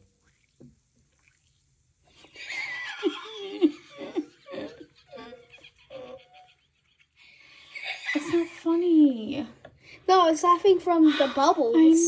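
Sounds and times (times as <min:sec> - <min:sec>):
giggling laughter: 0:02.2 - 0:08.6.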